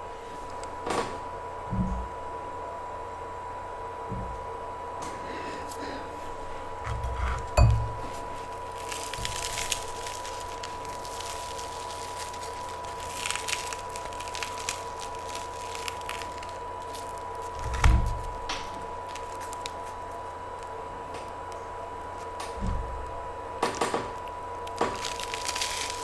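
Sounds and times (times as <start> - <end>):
crunchy chewing: 5.6 - 22.6, 23.8 - 26.0.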